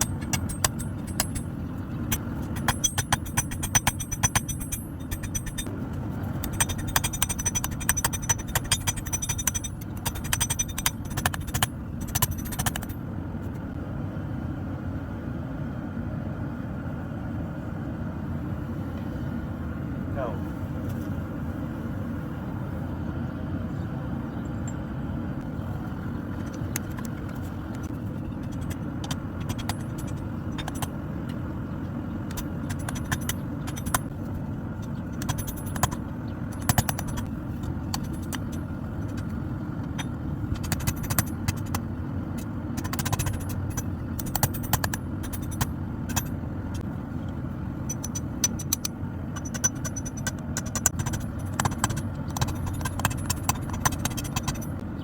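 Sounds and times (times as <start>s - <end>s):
metallic clinks of steel worked: 0.0s - 13.1s, 26.4s - 46.9s, 47.8s - 55.0s.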